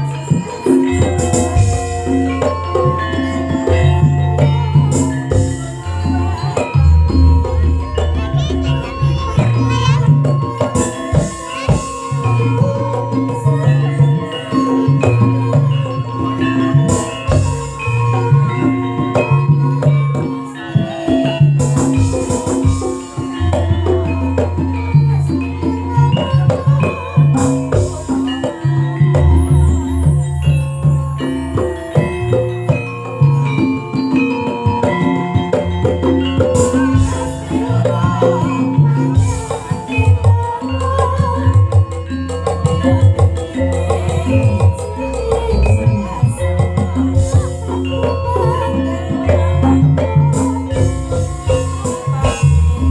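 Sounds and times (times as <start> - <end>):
hand percussion: 0.0 - 52.9
live band music: 0.0 - 52.9
bass line: 29.0 - 32.7.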